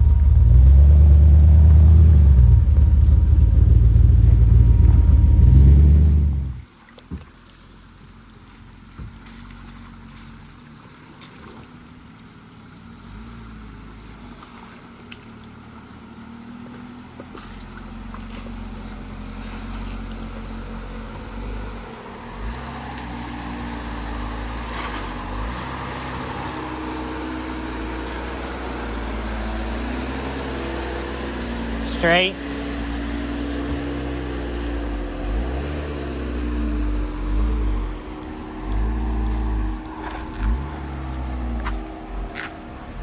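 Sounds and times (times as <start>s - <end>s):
truck engine at low revs: 0.0s - 43.0s
truck knocks and clunks: 8.8s - 11.5s.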